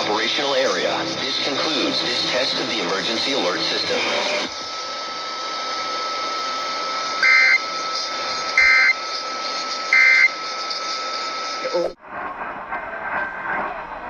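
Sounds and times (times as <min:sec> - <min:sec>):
radio static: 0:00.0 - 0:10.9, 0:11.5 - 0:12.0
faint steady whistle: 0:07.2 - 0:07.8, 0:08.6 - 0:10.4
two-tone digital data bursts: 0:07.2 - 0:09.0, 0:09.9 - 0:10.3.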